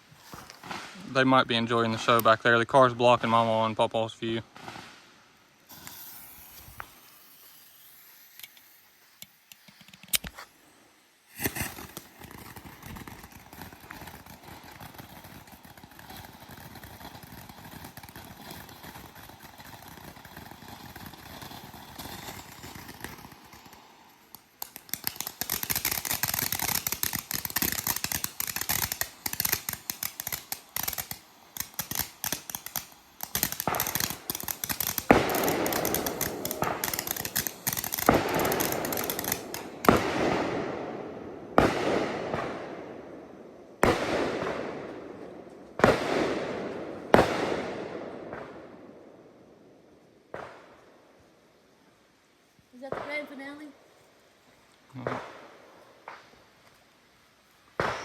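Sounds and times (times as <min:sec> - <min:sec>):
rapid crackling firework pops: 0:00.0 - 0:02.6, 0:03.2 - 0:10.6, 0:11.3 - 0:49.4, 0:50.3 - 0:51.0, 0:52.8 - 0:53.7, 0:55.0 - 0:56.8, 0:57.8 - 0:58.0
fireworks hissing crackling spray: 0:00.0 - 0:49.4, 0:52.1 - 0:58.0
firework pop: 0:11.3 - 0:14.3.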